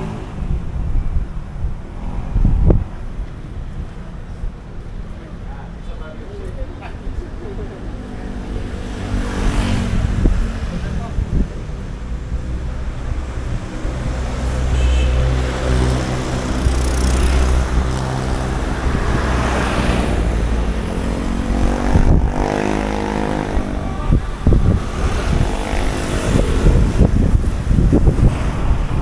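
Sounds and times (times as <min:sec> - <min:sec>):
vehicles passing in traffic: 0:00.0 - 0:29.0
engine higher hum: 0:06.1 - 0:29.0.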